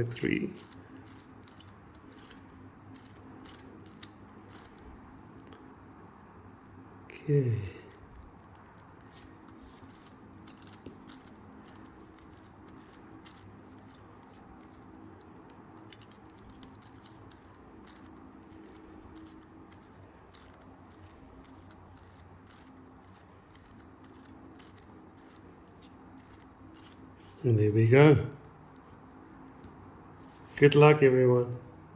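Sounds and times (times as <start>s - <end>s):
faint steady hum: 0.0s - 31.9s
puzzle cube plastic clicking: 0.1s - 5.6s, 7.9s - 27.4s.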